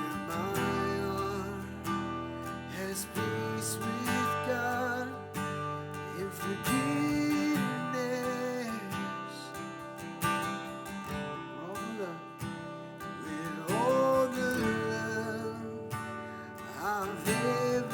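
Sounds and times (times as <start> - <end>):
acoustic guitar strumming: 0.0 - 17.9
person singing: 13.2 - 16.0, 16.7 - 17.9.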